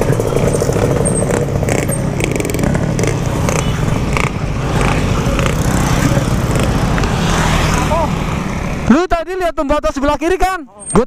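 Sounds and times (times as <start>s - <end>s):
two-stroke motorcycle engine running: 0.0s - 8.0s
engine crackles: 0.0s - 8.9s.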